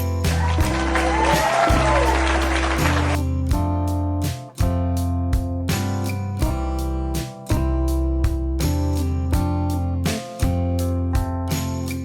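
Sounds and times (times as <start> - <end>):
strummed acoustic guitar music: 0.0 - 12.0.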